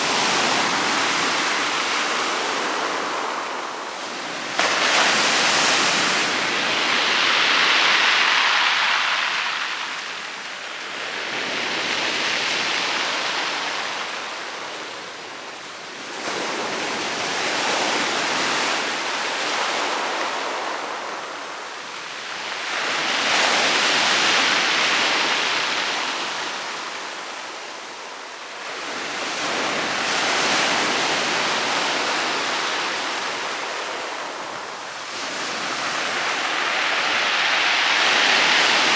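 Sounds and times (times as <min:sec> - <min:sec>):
waves breaking on pebbles: 0:00.0 - 0:18.4.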